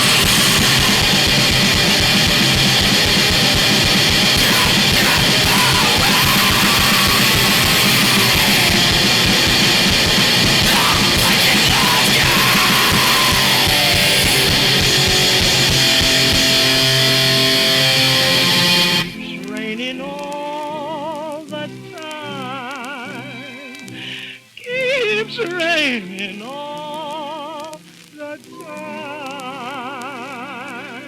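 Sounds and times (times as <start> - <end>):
steady held tones: 0.0 - 19.6
harsh noise music: 0.0 - 19.8.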